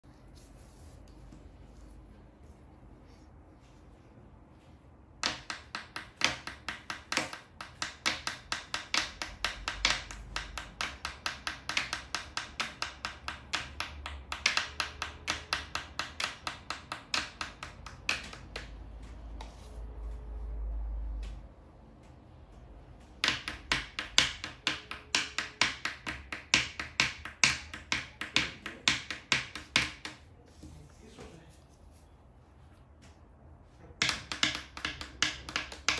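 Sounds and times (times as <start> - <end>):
rapid sharp taps: 34.0 - 35.9.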